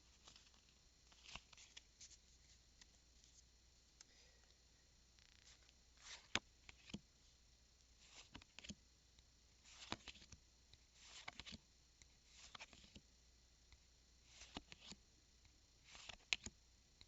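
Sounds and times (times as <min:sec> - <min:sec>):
soft rustling of cards: 0:00.0 - 0:08.8, 0:09.5 - 0:13.0, 0:13.7 - 0:15.0, 0:15.8 - 0:16.6.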